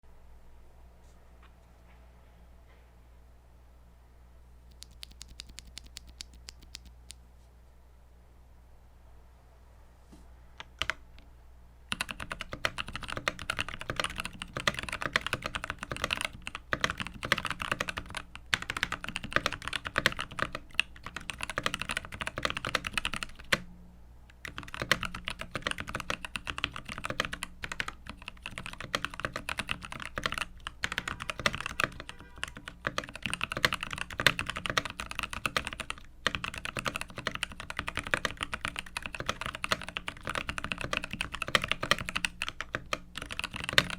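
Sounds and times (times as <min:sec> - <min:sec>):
typing on mechanical keyboard: 0:04.7 - 0:07.0, 0:10.6 - 0:11.0, 0:11.9 - 0:23.6, 0:24.4 - 0:43.9.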